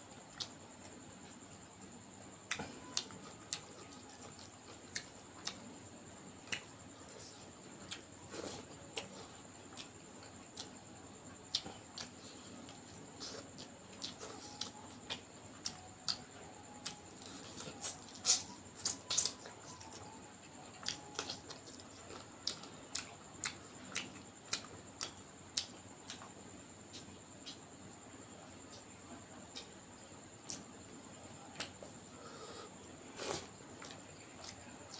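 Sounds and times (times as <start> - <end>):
person chewing with lip smacks: 11.4 - 16.2, 16.8 - 20.1, 20.8 - 26.3.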